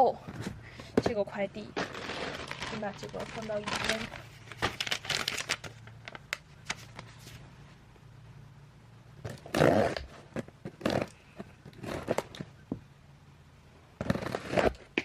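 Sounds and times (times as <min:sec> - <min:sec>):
parcel packaging rustling: 0:00.4 - 0:07.5.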